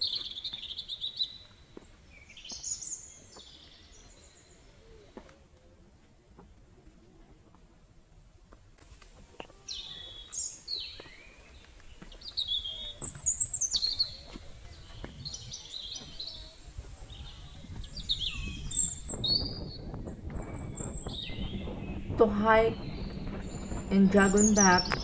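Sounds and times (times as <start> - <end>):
birds whistling: 17.8 - 25.0
low rumble: 17.9 - 25.0.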